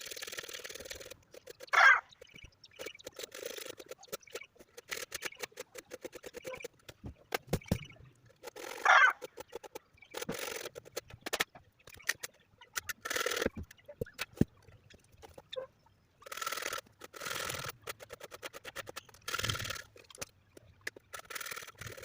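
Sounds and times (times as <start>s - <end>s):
loud animal calls: 1.7s - 2.1s, 8.7s - 9.3s.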